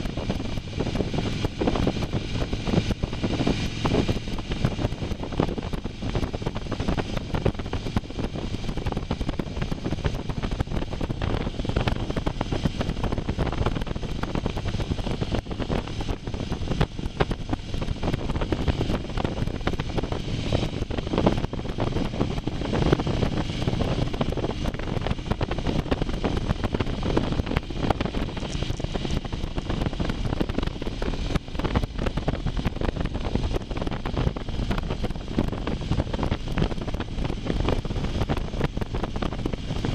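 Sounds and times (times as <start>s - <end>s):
motorcycle engine: 0.0s - 39.9s
wind rushing over microphone: 0.0s - 39.9s.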